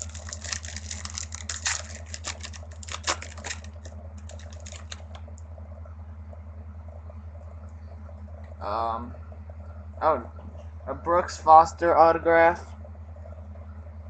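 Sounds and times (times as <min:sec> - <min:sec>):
foil pack crackling and rustling: 0:00.0 - 0:05.4
steady low hum: 0:00.0 - 0:14.0.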